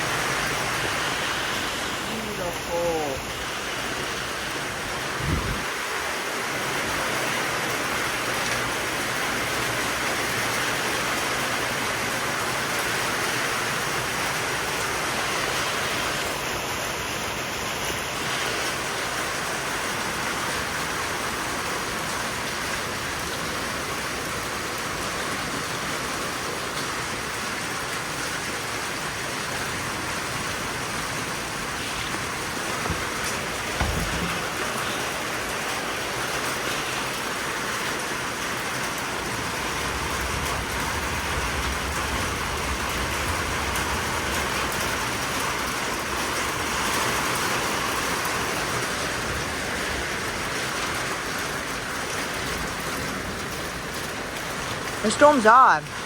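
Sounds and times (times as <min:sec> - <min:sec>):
steady rain hiss: 0:00.0 - 0:56.0
low thump: 0:33.7 - 0:34.6.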